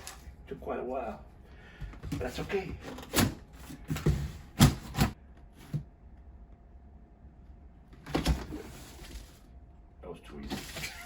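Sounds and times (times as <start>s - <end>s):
cardboard rustling and scraping: 2.1s - 5.9s, 8.1s - 9.5s.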